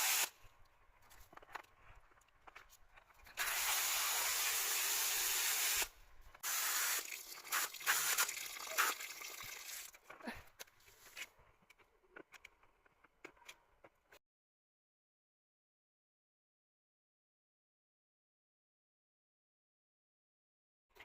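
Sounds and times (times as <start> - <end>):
running water: 6.4 - 10.0.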